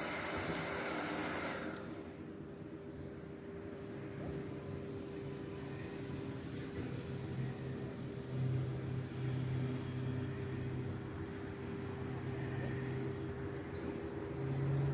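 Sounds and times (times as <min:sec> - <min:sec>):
dog dryer motor hum: 0:00.0 - 0:02.4.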